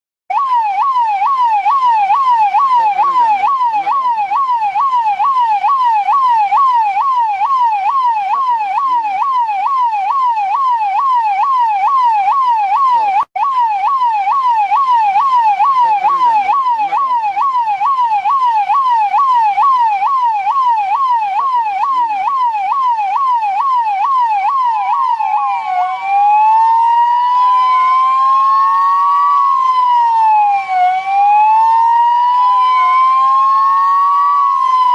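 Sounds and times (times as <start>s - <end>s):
police siren: 0.3s - 34.9s
second siren tone: 23.6s - 34.9s.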